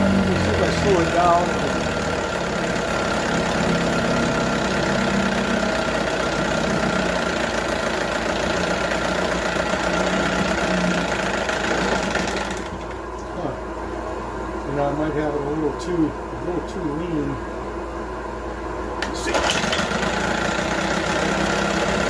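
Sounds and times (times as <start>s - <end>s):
outboard motor running: 0.0s - 13.5s, 19.1s - 22.0s.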